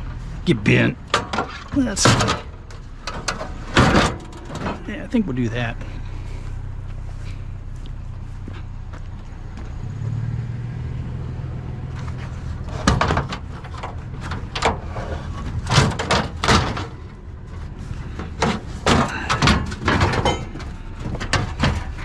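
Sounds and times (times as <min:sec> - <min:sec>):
metal clanks and bangs: 0:00.0 - 0:05.9, 0:12.6 - 0:22.0
vehicle engine humming: 0:00.0 - 0:22.0.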